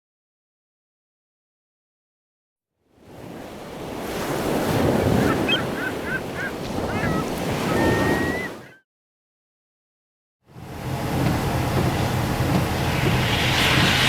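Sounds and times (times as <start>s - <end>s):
wind gusting across microphone: 3.1s - 8.7s, 10.6s - 14.0s
heavy surf rushing: 3.1s - 8.8s, 10.5s - 14.0s
high whistle: 7.0s - 8.8s.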